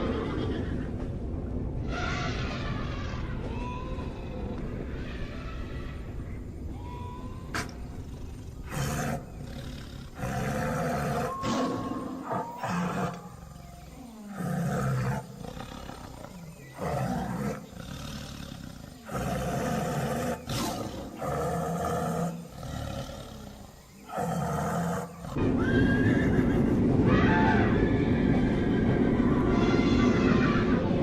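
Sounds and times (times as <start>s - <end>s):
tiger roars: 7.5s - 25.4s
loud steady rumbling: 25.2s - 31.0s.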